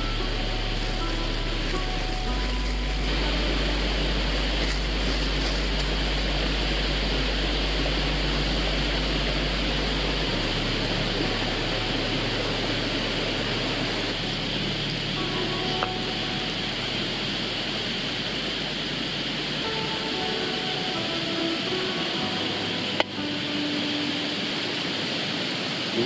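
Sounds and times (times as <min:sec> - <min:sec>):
low rumble: 0:00.0 - 0:26.0
small stream rushing: 0:00.0 - 0:26.0.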